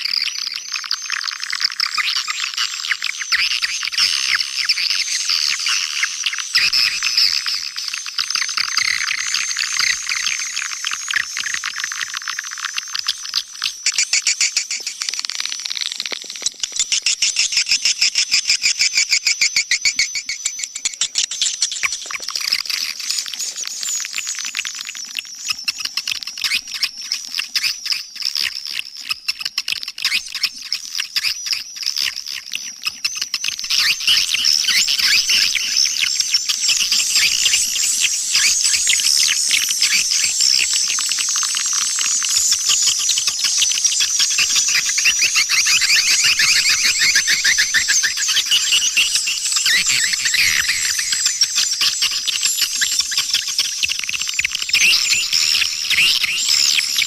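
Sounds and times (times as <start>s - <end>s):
swiftlets twittering: 33.3s - 57.0s.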